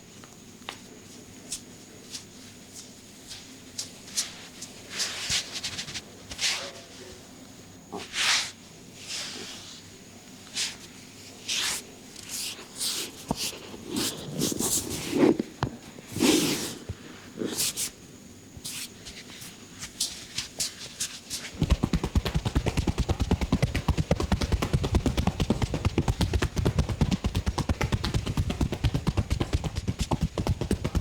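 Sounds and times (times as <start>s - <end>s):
hands rubbing hair: 1.4s - 7.0s, 8.0s - 15.4s, 16.1s - 18.0s, 18.6s - 24.7s
hands tapping on head: 21.6s - 31.0s.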